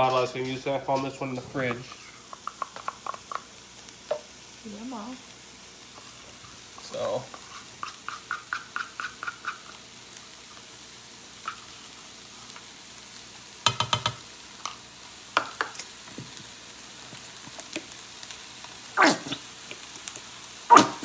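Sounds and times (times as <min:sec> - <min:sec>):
meat sizzling in a frying pan: 0:00.0 - 0:21.0
sharp knocks on a pan: 0:08.1 - 0:09.6, 0:13.6 - 0:14.2.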